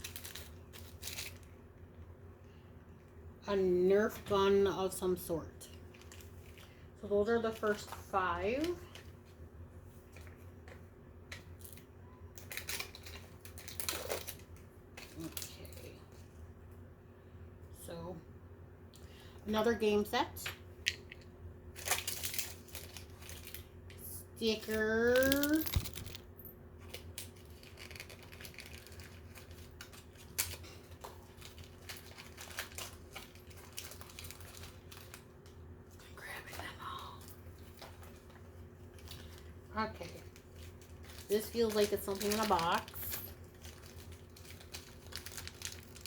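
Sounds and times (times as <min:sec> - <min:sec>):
packaging rustling: 0:00.0 - 0:01.6, 0:12.4 - 0:15.5, 0:21.8 - 0:23.7, 0:24.6 - 0:35.4, 0:37.6 - 0:46.0
low steady hum: 0:00.0 - 0:46.0.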